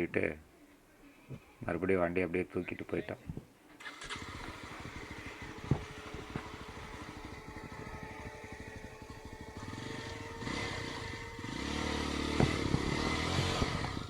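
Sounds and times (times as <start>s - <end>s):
motorcycle engine at low revs: 4.0s - 14.0s.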